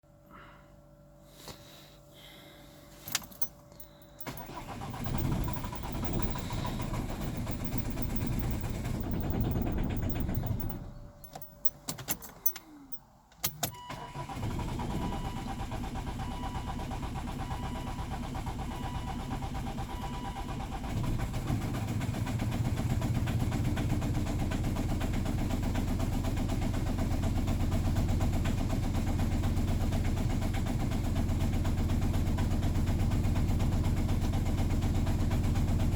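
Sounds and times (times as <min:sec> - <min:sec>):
diesel engine running: 0:03.0 - 0:13.0
diesel engine cranking: 0:03.0 - 0:21.8
clicks: 0:03.1 - 0:13.8.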